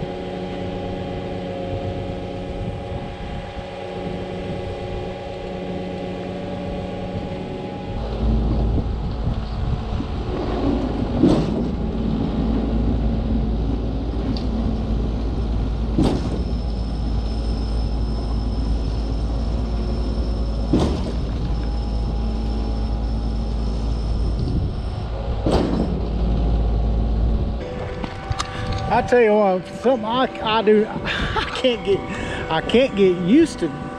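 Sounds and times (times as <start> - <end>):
concrete pump truck rumbling: 0.0 - 33.9
sharp clunk: 11.2 - 11.8, 16.0 - 16.5, 20.7 - 21.3, 25.4 - 26.0.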